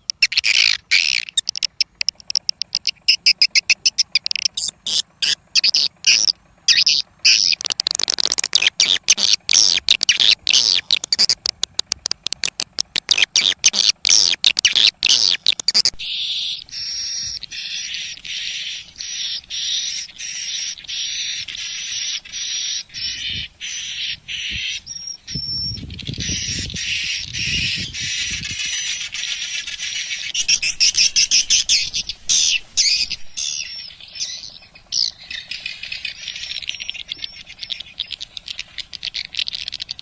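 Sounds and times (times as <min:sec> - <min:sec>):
twittering bird chirps: 0:00.0 - 0:40.0.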